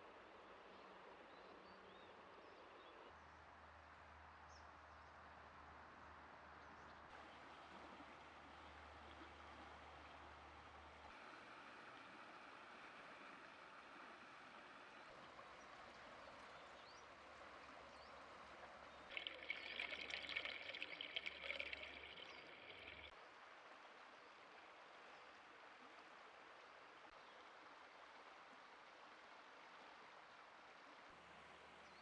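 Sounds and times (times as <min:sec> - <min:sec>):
flowing water: 0:07.0 - 0:32.0.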